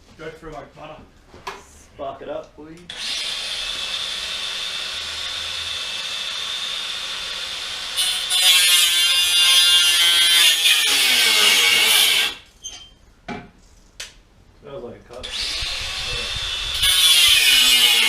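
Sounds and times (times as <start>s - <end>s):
angle grinder whining: 2.9s - 12.4s, 15.2s - 18.0s
grinder cutting steel pipe: 2.9s - 12.4s, 15.2s - 18.0s.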